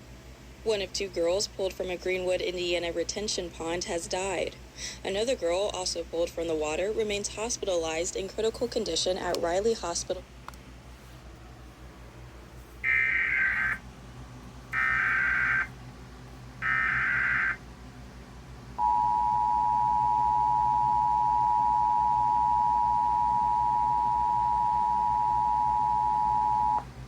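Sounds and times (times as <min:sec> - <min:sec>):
warbling digital data bursts: 0:12.8 - 0:13.8, 0:14.7 - 0:15.7, 0:16.6 - 0:17.6
steady two-tone attention signal: 0:18.8 - 0:26.8.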